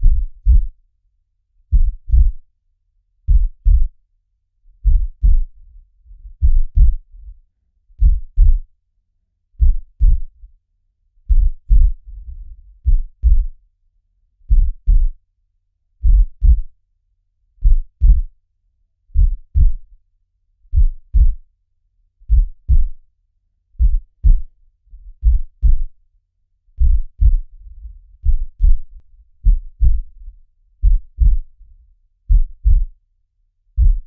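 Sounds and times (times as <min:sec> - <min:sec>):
heartbeat lub-dub: 0:00.0 - 0:00.8, 0:01.7 - 0:02.4, 0:03.3 - 0:04.0, 0:04.8 - 0:05.6, 0:06.2 - 0:07.1, 0:08.0 - 0:08.7, 0:09.6 - 0:10.3, 0:11.3 - 0:13.6, 0:14.5 - 0:15.2, 0:16.0 - 0:16.7, 0:17.6 - 0:18.3, 0:19.2 - 0:19.9, 0:20.7 - 0:21.4, 0:22.3 - 0:23.0, 0:23.8 - 0:24.6, 0:25.2 - 0:26.0, 0:26.8 - 0:31.6, 0:32.3 - 0:33.0, 0:33.8 - 0:34.0.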